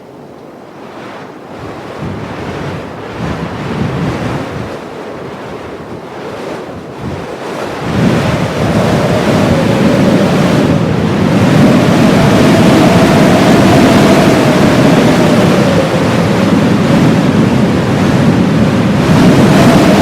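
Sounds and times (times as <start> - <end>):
blizzard wind gusting: 0.0 - 20.0.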